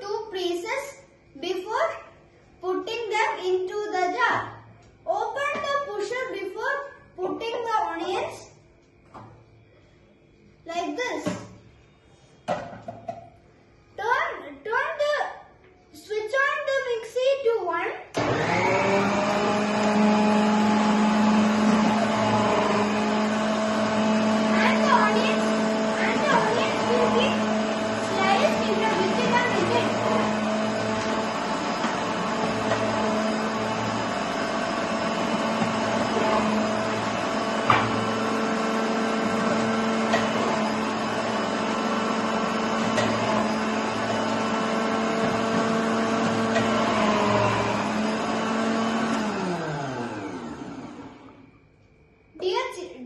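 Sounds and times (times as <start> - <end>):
mixer grinder motor humming: 18.2 - 51.5.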